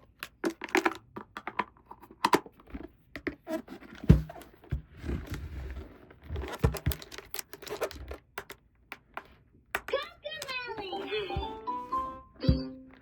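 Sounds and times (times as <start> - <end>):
plastic toy pieces clicking: 6.6 - 10.6.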